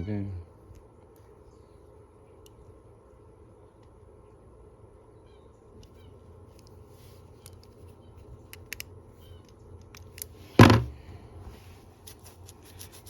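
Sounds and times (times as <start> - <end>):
small metallic clicks and taps: 8.5 - 10.3.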